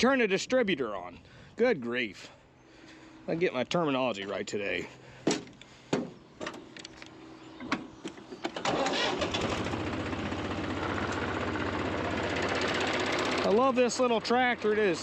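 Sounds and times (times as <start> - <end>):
tractor engine starting and running: 6.9 - 15.0.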